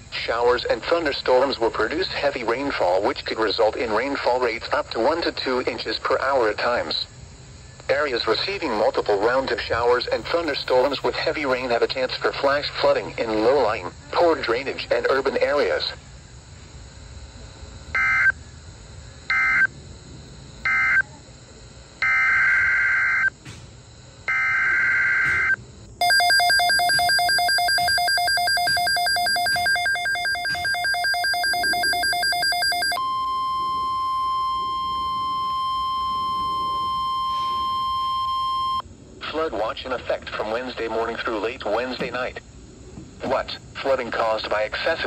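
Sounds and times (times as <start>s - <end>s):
harsh pulsing buzz: 4.7s - 38.2s
warbling digital data bursts: 24.4s - 37.9s
steady alert tone: 25.1s - 35.0s.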